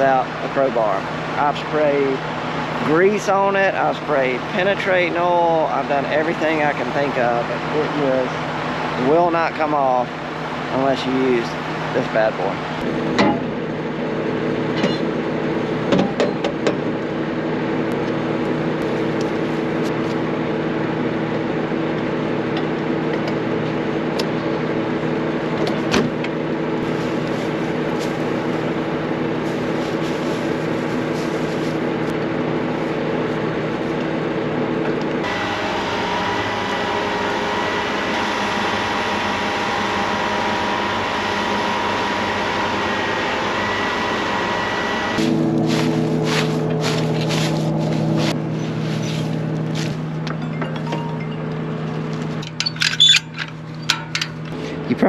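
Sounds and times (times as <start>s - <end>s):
engine droning hum: 0.0s - 55.0s
high thin whine: 26.8s - 34.4s, 35.2s - 50.1s.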